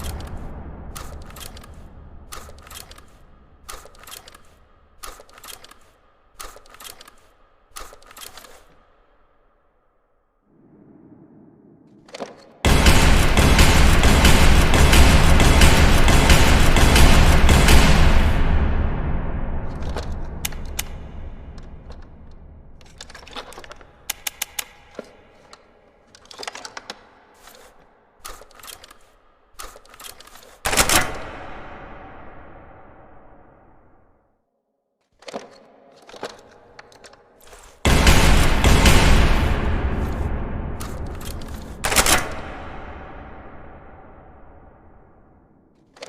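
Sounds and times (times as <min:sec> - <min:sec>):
shotgun mechanical clicks: 0:00.0 - 0:09.2, 0:19.7 - 0:31.4, 0:40.8 - 0:42.9
loud shotgun shot: 0:12.6 - 0:21.4, 0:37.8 - 0:44.5.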